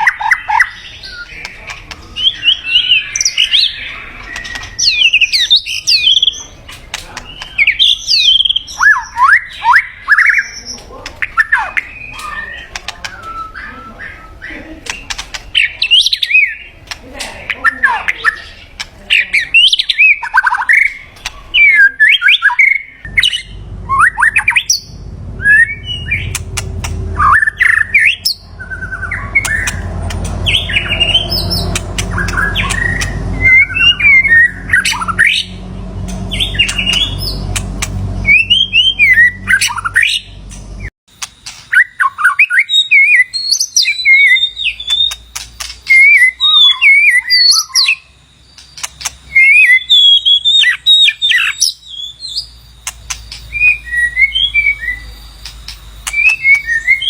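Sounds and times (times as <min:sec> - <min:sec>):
bird singing whistled phrases: 0:07.4 - 0:16.7, 0:19.6 - 0:40.4, 0:41.7 - 0:57.0
low rumble: 0:23.1 - 0:40.9.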